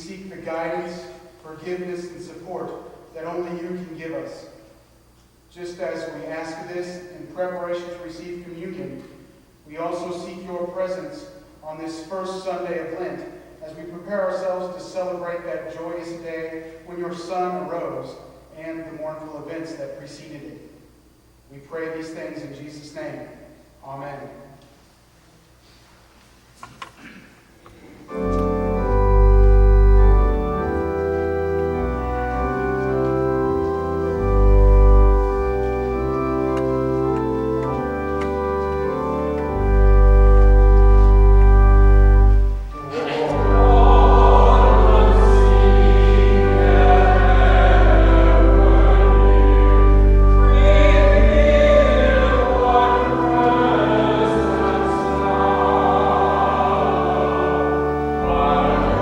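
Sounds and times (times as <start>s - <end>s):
organ playing chords: 27.7s - 59.0s
voices singing: 42.8s - 59.0s.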